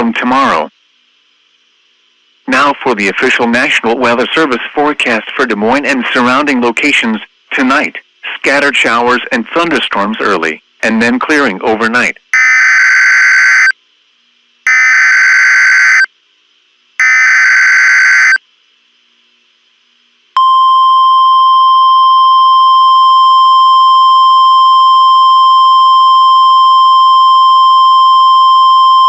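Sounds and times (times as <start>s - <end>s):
screeching data bursts: 12.3s - 13.8s, 14.6s - 16.1s, 17.0s - 18.4s
steady warning alarm tone: 12.3s - 13.8s, 14.7s - 16.1s, 17.0s - 18.4s, 20.4s - 29.0s.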